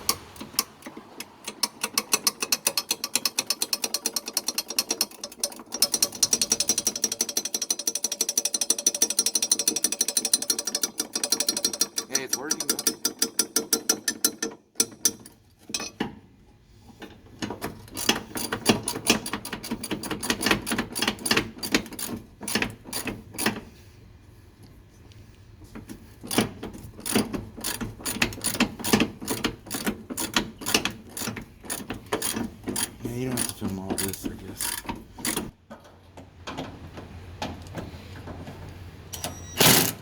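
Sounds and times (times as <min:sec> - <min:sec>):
ratchet wrench clicking: 0:27.0 - 0:35.5.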